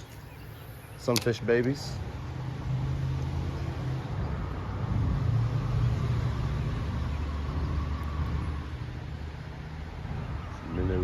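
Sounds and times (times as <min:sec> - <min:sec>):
highway traffic rumble: 0:00.0 - 0:11.0.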